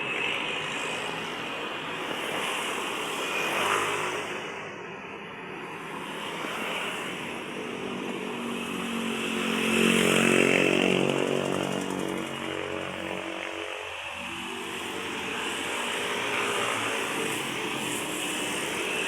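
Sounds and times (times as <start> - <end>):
vehicle engine passing by: 9.4 - 13.6.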